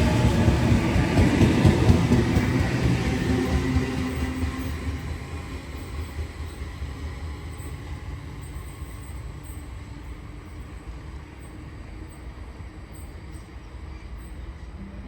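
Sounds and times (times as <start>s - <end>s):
electric train rumbling: 0.0s - 15.0s.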